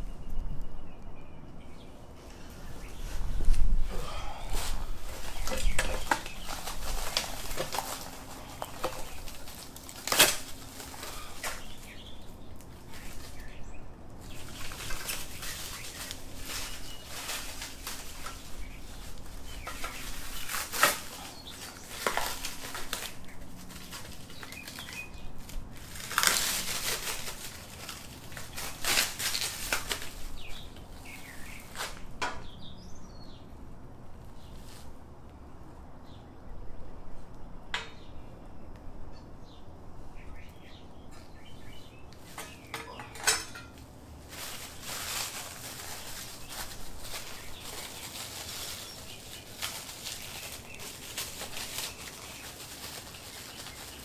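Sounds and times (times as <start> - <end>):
packaging rustling: 4.3 - 13.6, 14.2 - 32.1, 41.6 - 54.0
hard parts knocking and clinking: 42.3 - 43.8.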